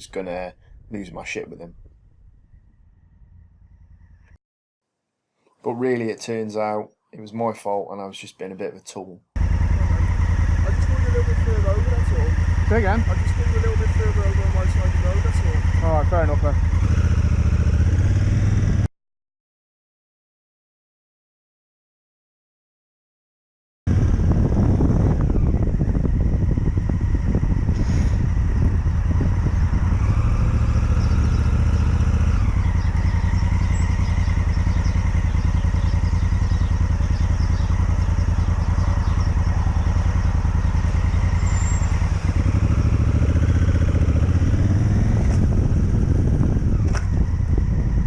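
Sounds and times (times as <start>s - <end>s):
motorcycle engine running: 2.9s - 4.4s, 9.4s - 18.9s, 23.9s - 48.0s.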